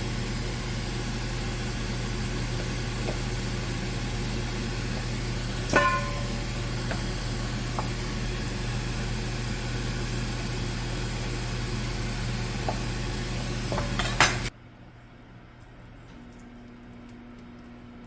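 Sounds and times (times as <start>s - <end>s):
kitchen hiss with low hum: 0.0s - 18.0s
kitchenware clinking: 5.6s - 8.0s, 13.6s - 14.5s.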